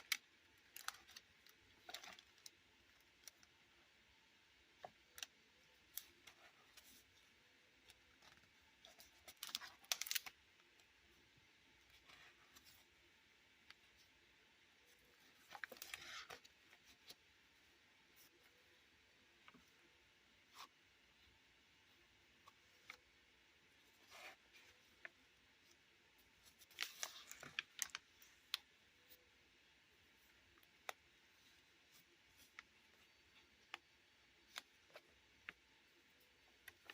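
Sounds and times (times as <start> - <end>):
paper crinkles and clicks: 0.0 - 3.6, 7.8 - 10.9, 14.9 - 17.2, 23.9 - 29.2, 30.1 - 36.9
paper pages rustling: 7.9 - 10.4, 14.8 - 18.8, 23.8 - 29.2.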